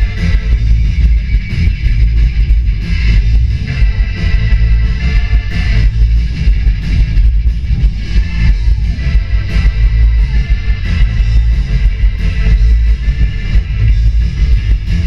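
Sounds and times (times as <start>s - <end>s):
live rock band playing: 0.0s - 15.0s.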